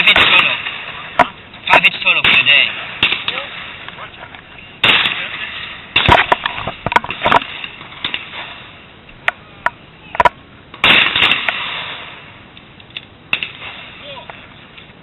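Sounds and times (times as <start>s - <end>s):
shotgun bangs: 0.0s - 1.4s, 2.1s - 3.9s, 4.8s - 8.4s, 10.8s - 12.2s
sharp clicks and knocks: 6.0s - 8.4s, 9.1s - 11.6s.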